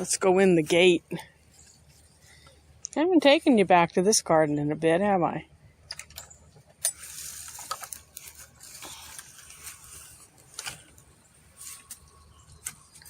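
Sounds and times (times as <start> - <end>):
rustling of plants: 6.7 - 13.0.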